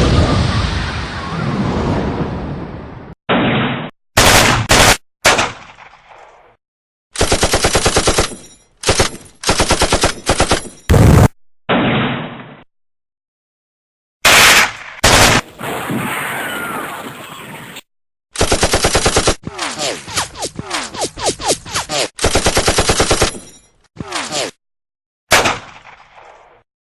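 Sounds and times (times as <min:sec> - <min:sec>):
gunshots: 0:03.3 - 0:06.6, 0:14.3 - 0:15.9, 0:25.3 - 0:26.6
machine-gun fire: 0:04.2 - 0:05.9, 0:07.2 - 0:08.3, 0:14.3 - 0:15.4, 0:18.4 - 0:19.4.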